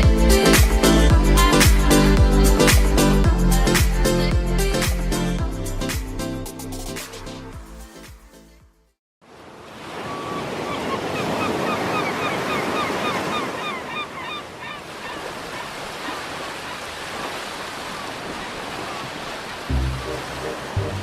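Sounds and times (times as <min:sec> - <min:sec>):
surf washing on beach: 0:09.3 - 0:21.0
flock of birds calling: 0:10.1 - 0:15.7.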